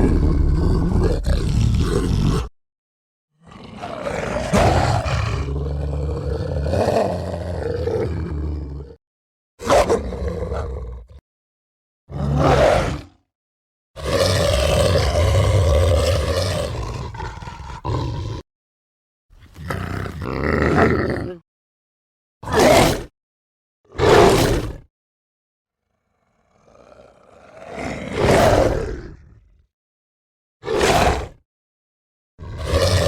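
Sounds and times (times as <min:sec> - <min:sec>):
rough low werewolf roars: 0:00.0 - 0:02.5, 0:03.4 - 0:09.0, 0:14.0 - 0:18.4, 0:26.2 - 0:29.5, 0:32.4 - 0:33.0.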